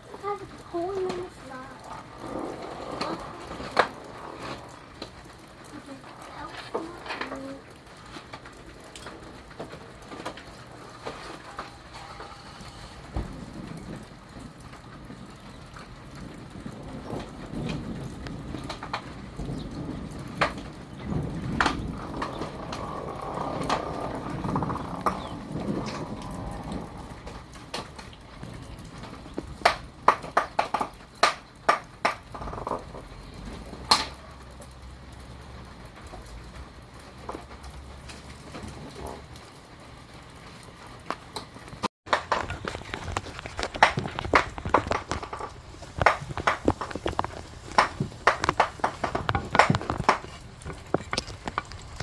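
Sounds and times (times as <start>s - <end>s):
steady rain: 0.0s - 52.0s
sharp clicks and knocks: 41.1s - 52.0s.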